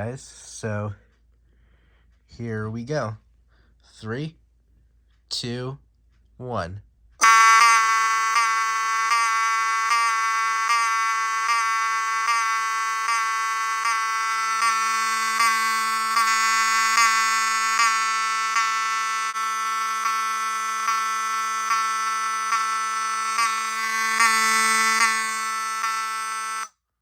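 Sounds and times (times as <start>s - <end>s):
fire alarm horn buzzing: 7.2s - 26.7s.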